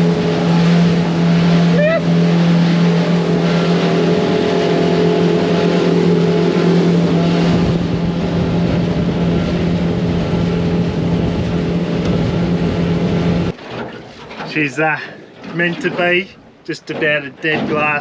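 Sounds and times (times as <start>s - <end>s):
rushing wind: 0.0s - 13.6s
motorboat engine hum: 0.0s - 18.0s
rushing water: 0.0s - 18.0s.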